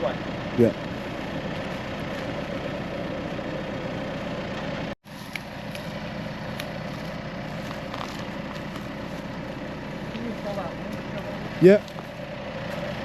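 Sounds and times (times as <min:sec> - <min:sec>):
car engine idling: 0:06.2 - 0:13.0.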